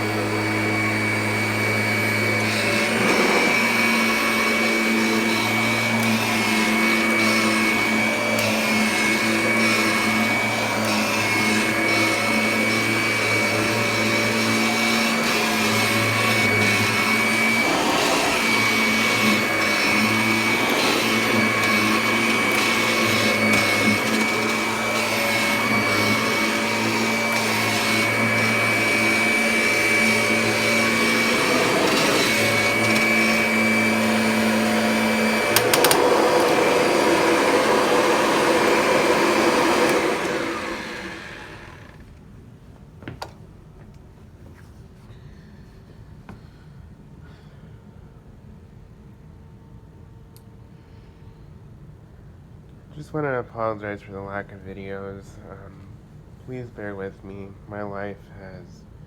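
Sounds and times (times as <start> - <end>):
upright vacuum cleaner running: 0.0 - 42.2.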